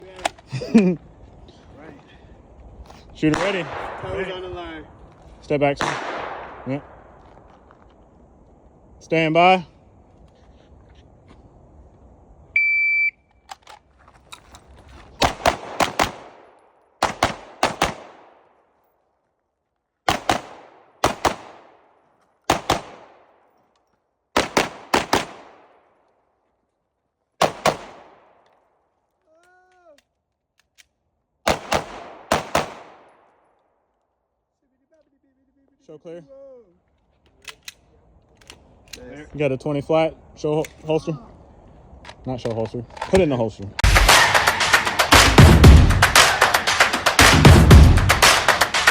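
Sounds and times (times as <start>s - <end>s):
pistol shots: 3.2s - 4.8s, 5.6s - 7.4s, 15.2s - 18.5s, 20.1s - 23.4s, 24.4s - 25.8s, 27.4s - 28.4s, 31.4s - 33.3s
shot timer beep: 12.6s - 13.2s.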